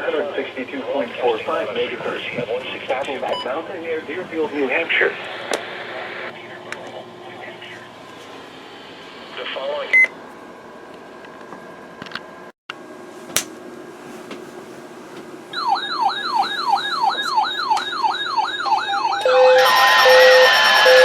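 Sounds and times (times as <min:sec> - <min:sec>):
electronic siren yelping: 0:15.6 - 0:21.0.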